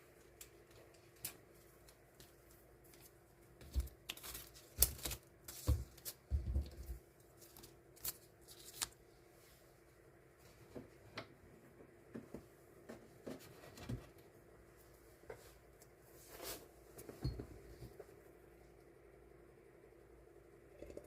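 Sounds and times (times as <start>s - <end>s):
low steady hum: 0.0s - 21.0s
stickers and packaging rustling: 0.2s - 9.0s.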